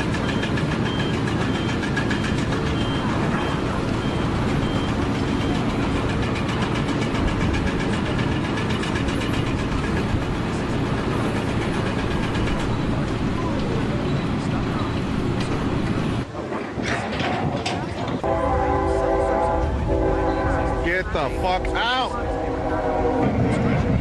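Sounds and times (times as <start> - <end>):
heavy machinery running: 0.0 - 24.0.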